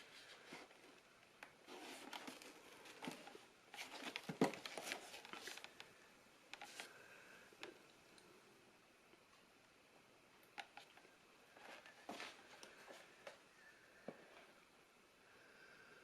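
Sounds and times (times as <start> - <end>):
rustling: 0.0 - 7.0.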